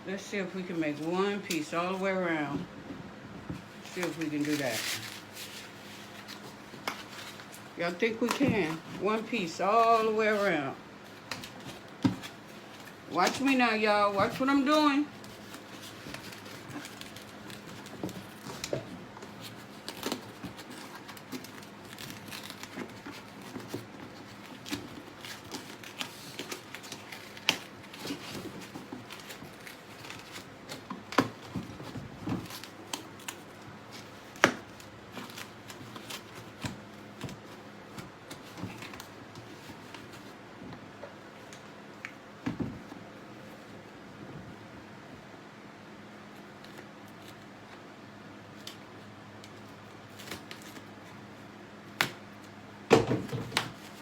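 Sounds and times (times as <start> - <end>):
styrofoam crinkling and creaking: 3.7 - 40.4.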